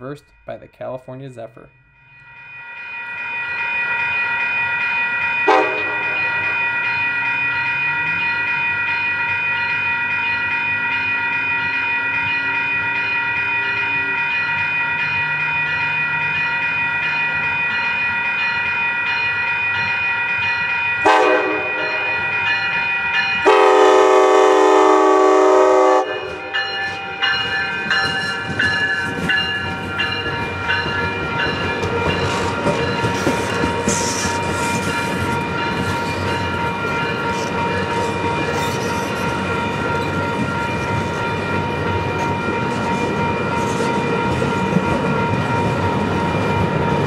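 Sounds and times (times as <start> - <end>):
locomotive bell ringing: 0.0 - 47.0
train horn blasts: 5.5 - 6.1, 21.0 - 22.2, 23.4 - 26.5.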